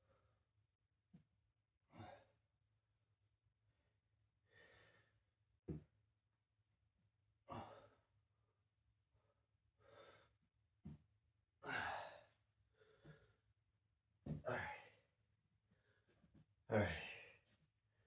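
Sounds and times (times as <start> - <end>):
person breathing hard: 4.5 - 5.1, 9.8 - 10.3.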